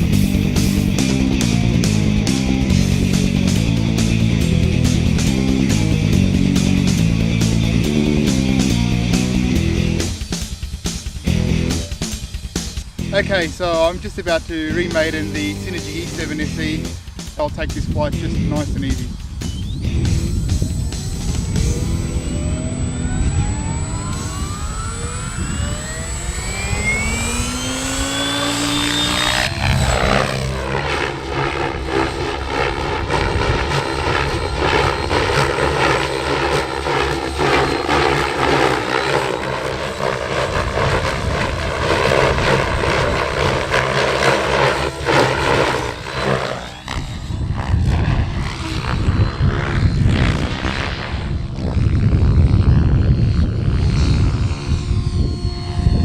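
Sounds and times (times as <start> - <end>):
rc helicopter motor whine: 0.0 - 56.0.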